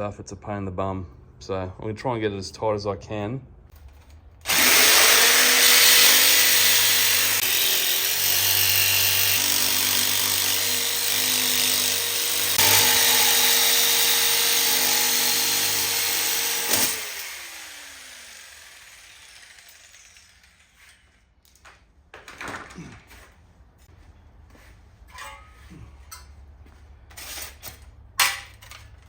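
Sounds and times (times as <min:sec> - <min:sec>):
jigsaw cutting sheet steel: 0:04.4 - 0:21.2.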